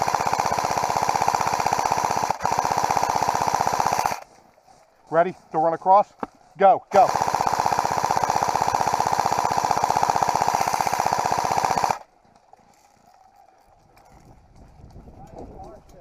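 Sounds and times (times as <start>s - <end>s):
airsoft rifle full-auto burst: 0.0s - 4.3s, 6.9s - 12.1s.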